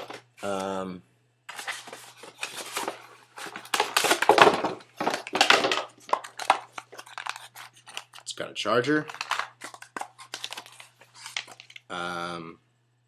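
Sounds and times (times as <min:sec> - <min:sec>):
packaging rattling and rustling: 0:00.0 - 0:00.2, 0:01.5 - 0:08.3, 0:09.0 - 0:11.9.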